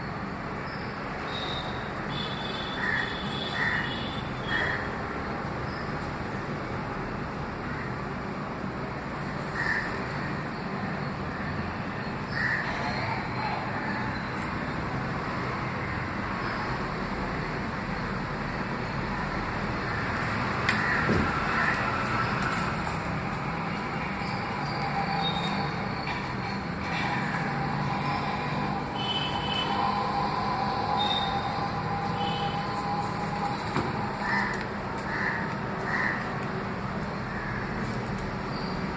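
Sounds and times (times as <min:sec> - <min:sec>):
distant road traffic hum: 0:00.0 - 0:38.9
crow cawing: 0:02.7 - 0:05.0, 0:09.6 - 0:10.3, 0:12.3 - 0:12.9, 0:20.7 - 0:22.0, 0:34.1 - 0:36.4, 0:37.3 - 0:37.8
held whining tone: 0:23.7 - 0:34.7.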